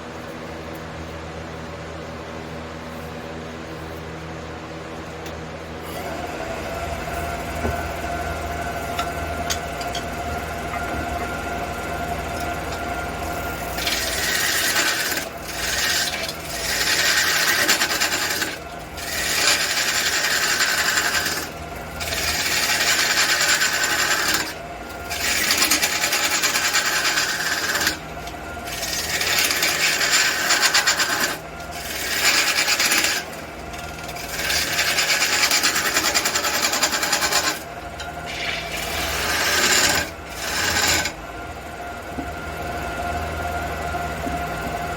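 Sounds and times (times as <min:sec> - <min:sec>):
wood lathe humming: 0:05.8 - 0:44.9
hand tool cutting spinning wood: 0:06.0 - 0:41.2.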